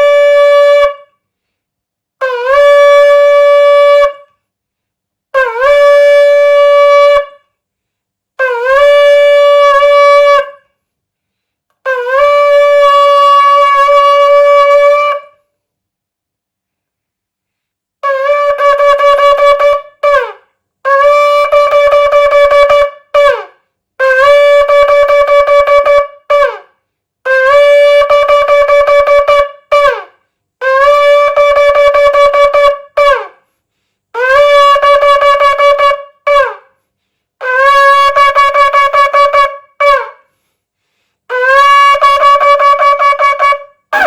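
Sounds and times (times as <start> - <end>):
shofar blasts: 0.0 - 1.2, 2.2 - 4.4, 5.3 - 7.5, 8.4 - 10.7, 11.8 - 15.4, 18.0 - 33.4, 34.2 - 36.8, 37.4 - 40.3, 41.3 - 44.0.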